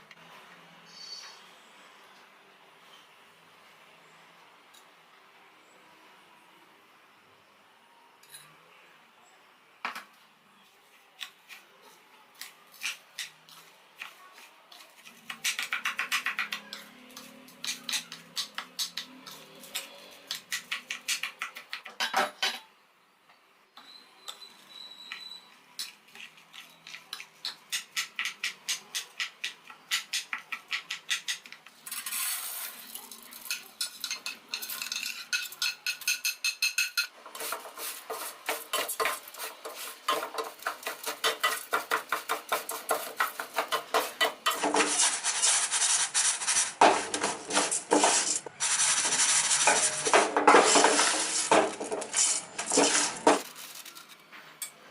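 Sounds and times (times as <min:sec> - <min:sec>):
metal utensil scraping in pan: 0:31.9 - 0:54.7.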